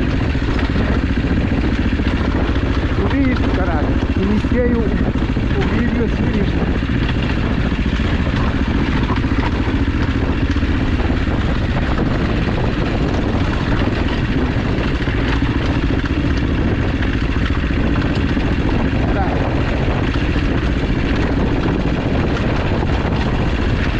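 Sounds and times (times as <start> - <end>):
motorcycle engine running: 0.0 - 23.9.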